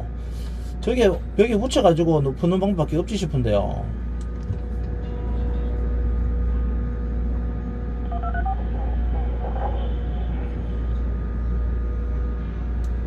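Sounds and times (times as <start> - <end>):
faint constant hum: 0.0 - 13.0
electronic beeps: 8.1 - 8.6.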